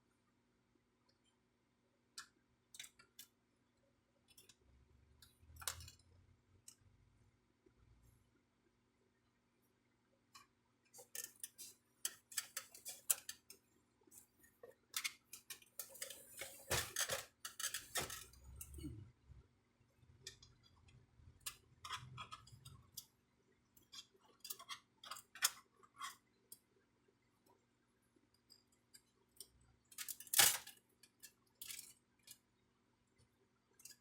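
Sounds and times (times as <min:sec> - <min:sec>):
plastic parts clicking and rattling: 0:02.8 - 0:03.4, 0:05.2 - 0:06.1, 0:10.9 - 0:13.6, 0:14.2 - 0:18.8, 0:23.8 - 0:26.2, 0:29.0 - 0:32.4.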